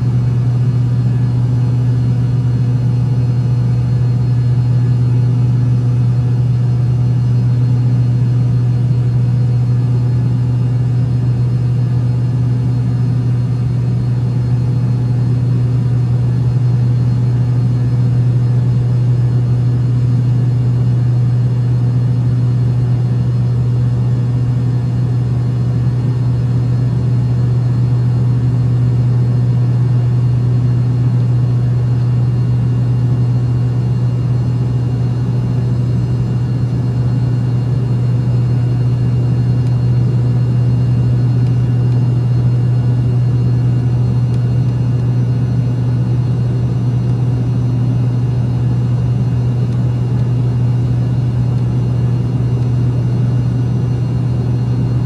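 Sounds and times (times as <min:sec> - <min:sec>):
low mechanical hum: 0:00.0 - 0:55.0.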